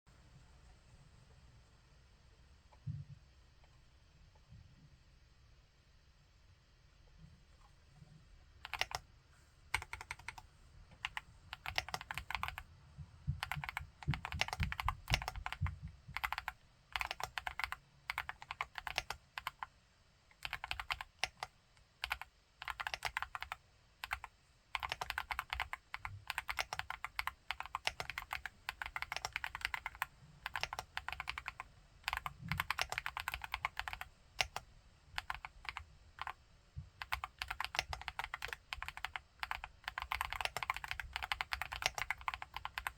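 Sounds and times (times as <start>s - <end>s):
mechanical keyboard typing: 8.6s - 9.0s, 9.7s - 12.6s, 13.4s - 19.7s, 20.4s - 36.4s, 37.0s - 42.9s.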